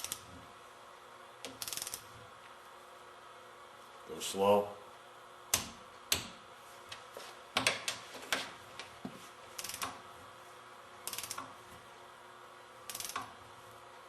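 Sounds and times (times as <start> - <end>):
torque wrench clicks: 0.0 - 0.2, 1.4 - 2.0, 9.6 - 10.0, 11.0 - 11.5, 12.9 - 13.3
rapid ratchet ticks: 1.4 - 2.0, 9.6 - 10.0, 11.0 - 11.5, 12.9 - 13.3.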